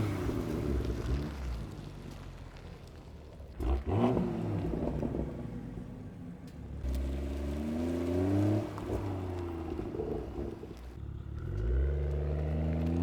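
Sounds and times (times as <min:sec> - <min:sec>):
car engine accelerating: 0:03.6 - 0:13.0.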